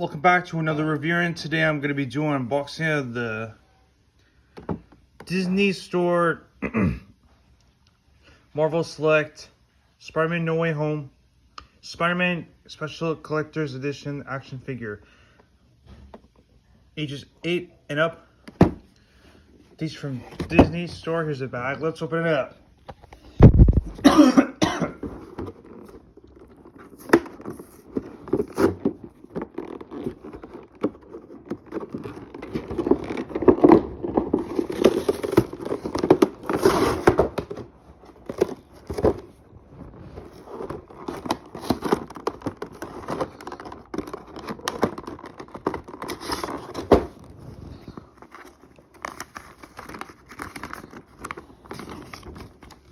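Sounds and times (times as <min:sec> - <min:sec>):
shopping bag rustling: 0:24.9 - 0:52.9.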